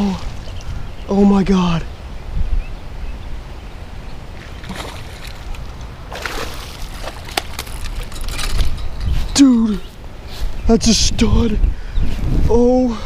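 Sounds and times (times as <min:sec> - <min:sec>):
wind rumble on microphone: 0:00.0 - 0:13.0
fish splashing in water: 0:04.4 - 0:07.9.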